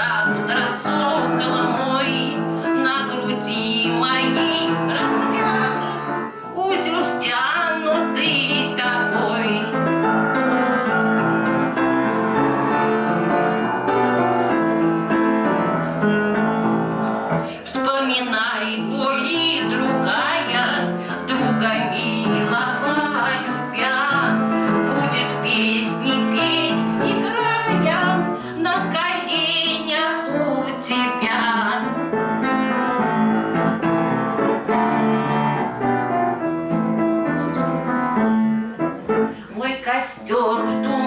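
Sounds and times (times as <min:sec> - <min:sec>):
woman singing: 0:00.0 - 0:10.0, 0:17.6 - 0:32.2, 0:39.6 - 0:41.0
piano accompaniment: 0:00.0 - 0:41.0.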